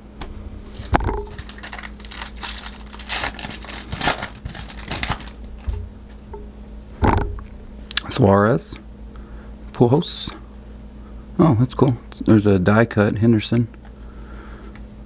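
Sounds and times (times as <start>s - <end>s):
foil pack crinkling and tearing: 0.7s - 5.8s.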